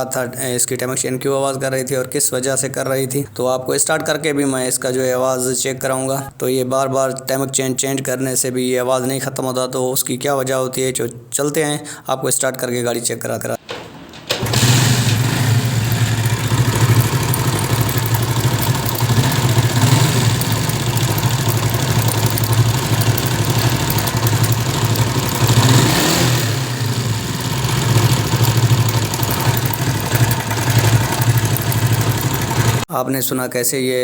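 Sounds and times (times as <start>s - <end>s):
timing chain rattle: 14.4s - 32.8s
motorcycle engine idling: 14.4s - 32.9s.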